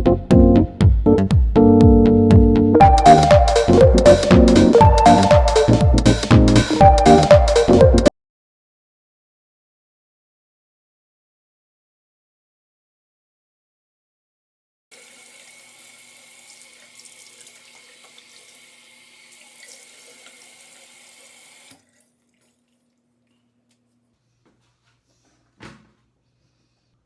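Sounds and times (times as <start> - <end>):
tap water running into sink: 15.0 - 22.9.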